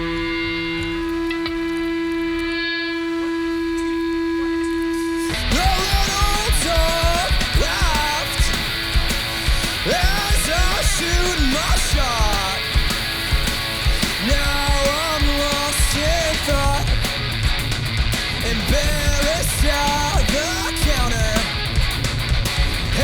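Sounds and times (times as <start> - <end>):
distorted electric guitar lead: 0.0 - 23.0
driving drums: 5.3 - 23.0.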